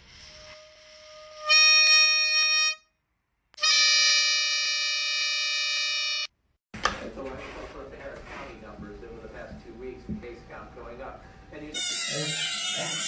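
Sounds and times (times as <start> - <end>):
reedy harmonica-like tones: 0.3 - 2.9, 3.6 - 6.3.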